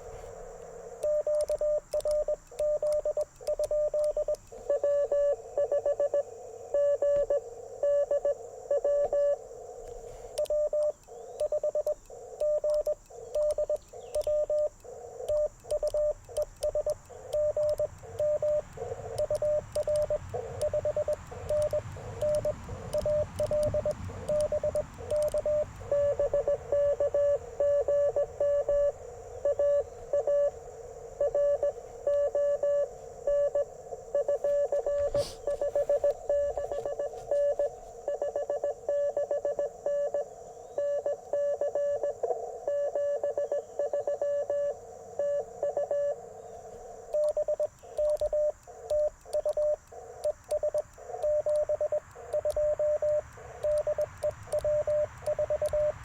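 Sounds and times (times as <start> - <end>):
receiver hiss: 0.0 - 56.0
faint clicks: 0.1 - 5.2, 9.8 - 26.1, 46.5 - 56.0
morse code tone: 1.0 - 9.4, 10.0 - 46.2, 47.0 - 56.0.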